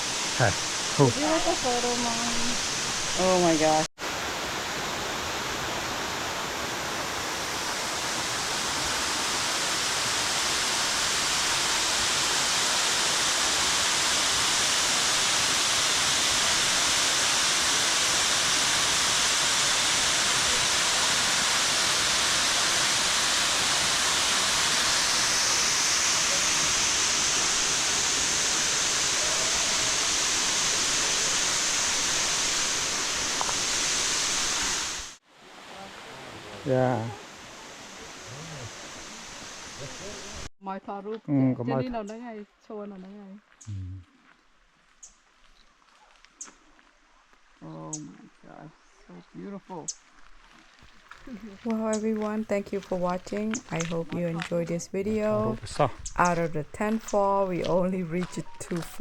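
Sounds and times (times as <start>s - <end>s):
waterfall rushing: 0.0s - 40.5s.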